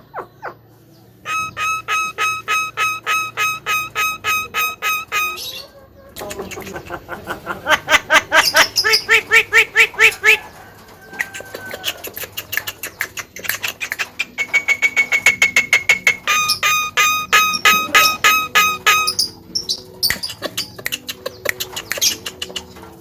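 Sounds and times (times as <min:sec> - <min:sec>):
myna harsh repeated notes: 0:01.3 - 0:05.6, 0:15.8 - 0:19.4.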